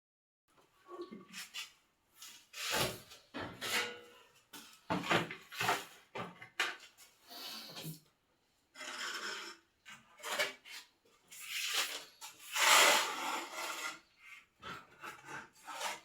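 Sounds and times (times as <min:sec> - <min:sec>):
scraping and rubbing strokes: 0:10.2 - 0:16.0.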